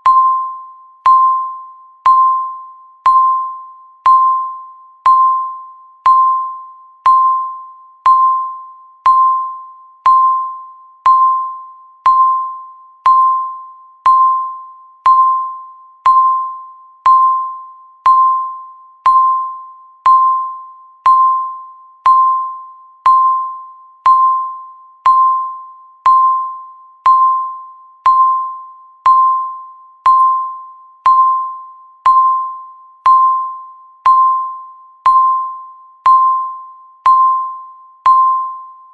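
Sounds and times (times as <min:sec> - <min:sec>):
bell-like timer beeps: 0:00.0 - 0:38.9.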